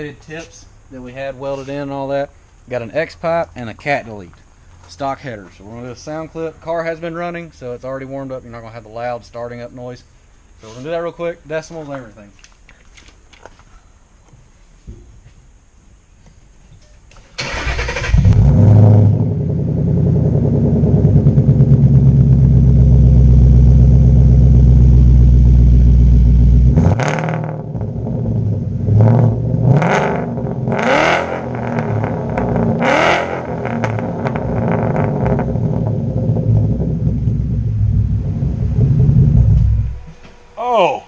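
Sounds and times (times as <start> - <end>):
loud car engine revving: 17.7 - 40.1.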